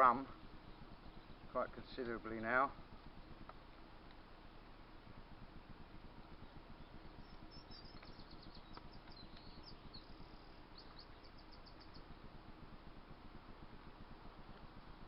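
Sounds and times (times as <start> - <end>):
birds chirping: 0.0 - 3.4, 6.0 - 12.6
low background hiss: 0.0 - 15.0.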